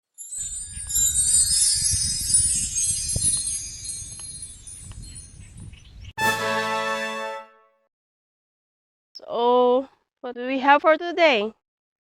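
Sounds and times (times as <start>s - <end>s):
shimmering bell chimes: 0.2s - 5.4s.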